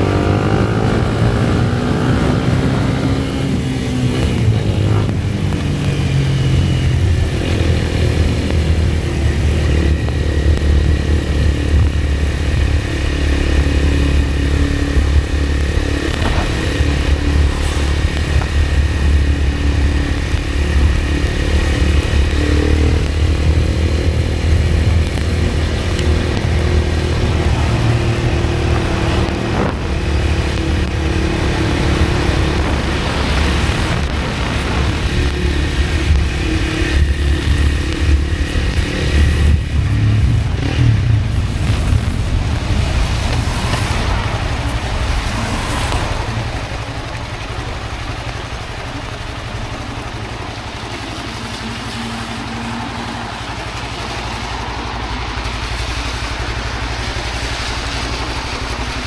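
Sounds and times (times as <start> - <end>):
motor vehicle engine running: 0.0 - 59.0.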